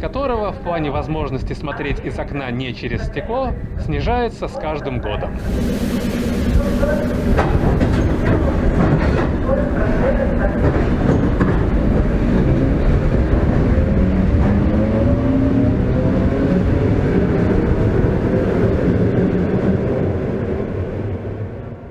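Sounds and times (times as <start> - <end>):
train wheels rumbling on track: 5.4 - 21.9.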